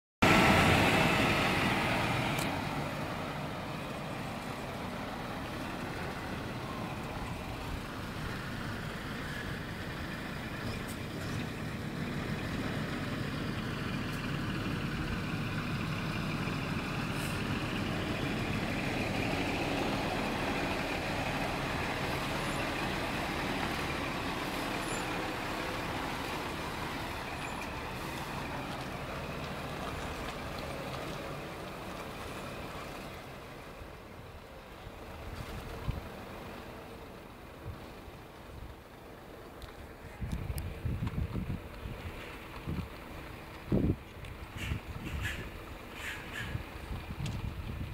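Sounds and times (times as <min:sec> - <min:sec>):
truck diesel engine running: 0:00.2 - 0:47.9
hiss: 0:44.6 - 0:46.6.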